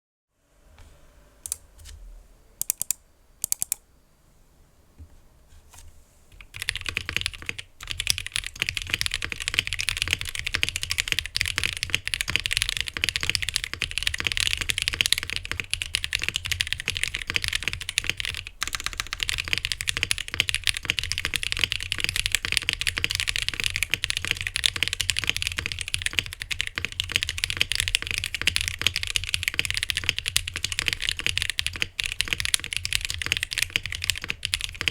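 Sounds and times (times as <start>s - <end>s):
mechanical keyboard typing: 1.4s - 1.6s, 2.6s - 3.8s, 6.4s - 34.9s.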